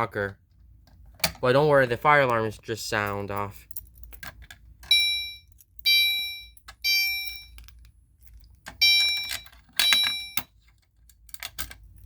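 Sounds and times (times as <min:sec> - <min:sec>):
fire alarm chime tones: 0:04.9 - 0:07.6, 0:08.8 - 0:10.5.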